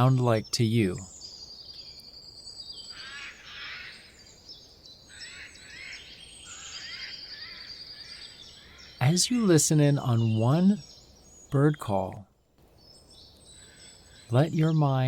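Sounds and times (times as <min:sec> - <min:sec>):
soft background hiss: 0:00.0 - 0:03.0, 0:07.8 - 0:15.0
quick rising bird chirps: 0:01.0 - 0:09.1.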